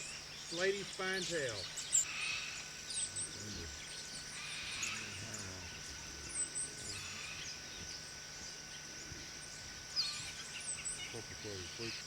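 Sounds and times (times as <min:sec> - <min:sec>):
high insect drone: 0:00.0 - 0:12.0.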